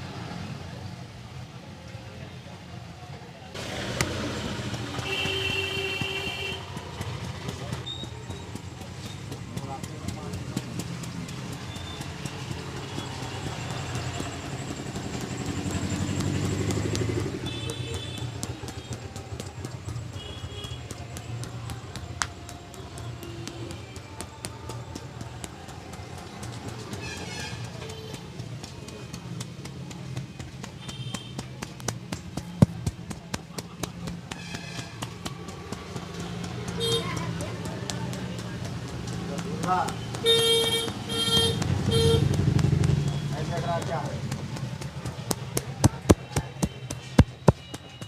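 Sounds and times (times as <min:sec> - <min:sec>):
vehicle engine running: 0:03.6 - 0:48.0
hands slapping and tapping a head: 0:20.7 - 0:24.3.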